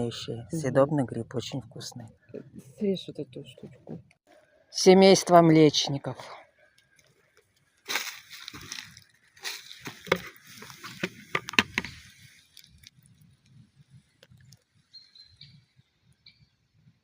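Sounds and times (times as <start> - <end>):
dry twigs crackling and snapping: 6.8 - 14.9.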